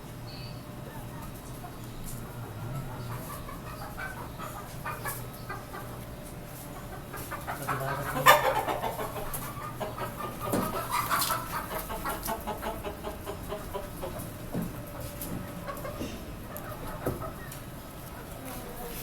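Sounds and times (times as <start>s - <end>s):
chickens clucking and calling: 0.0s - 19.0s
chicken squawk: 2.4s - 6.0s, 6.8s - 14.2s.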